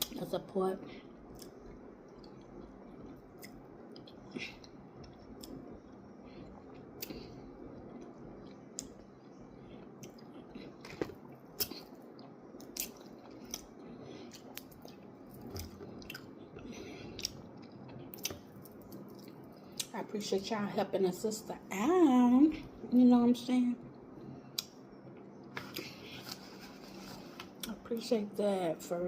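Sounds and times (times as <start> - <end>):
person chewing: 1.2 - 19.9, 24.0 - 27.8.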